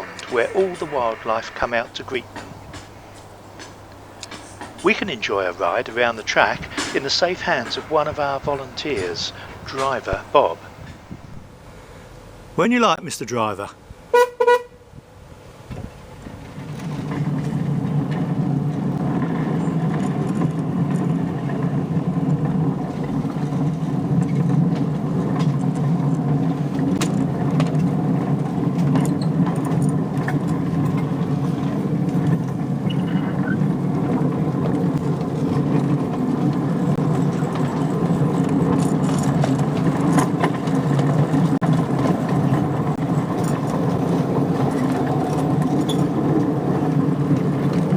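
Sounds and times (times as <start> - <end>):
train wheels rumbling on track: 0.0 - 12.7, 13.6 - 47.9
train horn toot: 14.1 - 15.0.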